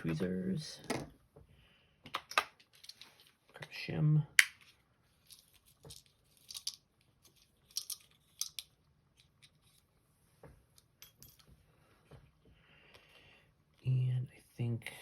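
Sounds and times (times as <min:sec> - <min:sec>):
metal tools clinking: 0:10.8 - 0:11.5.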